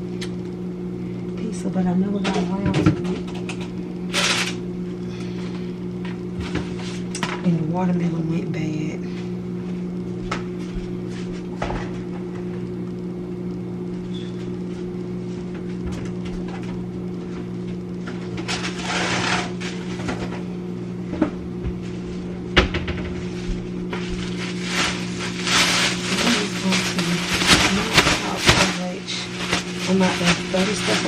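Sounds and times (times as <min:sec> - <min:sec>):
low electrical hum: 0:00.0 - 0:31.0
packaging rustling: 0:23.9 - 0:31.0.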